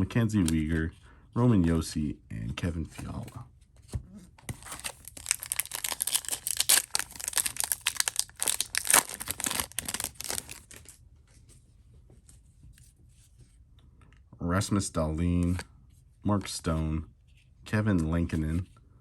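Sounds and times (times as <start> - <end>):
soft clicks of cards handled: 0.3 - 0.8
foil wrapper tearing and crackling: 4.5 - 11.0.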